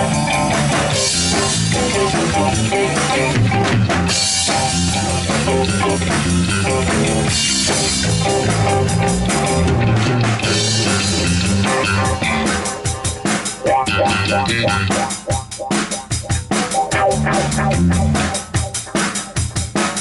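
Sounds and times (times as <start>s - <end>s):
rock band playing: 0.0s - 20.0s.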